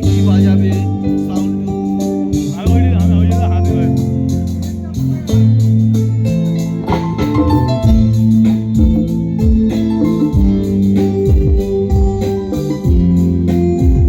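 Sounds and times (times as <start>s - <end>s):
bass line: 0.0s - 14.0s
electronic keyboard organ chords: 0.0s - 14.0s.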